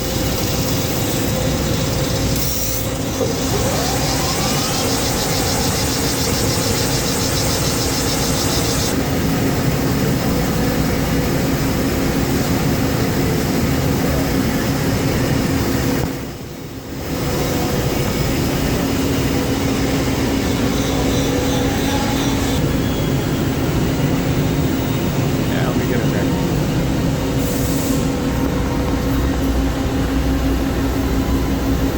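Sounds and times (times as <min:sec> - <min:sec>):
lathe humming: 0:00.0 - 0:08.9.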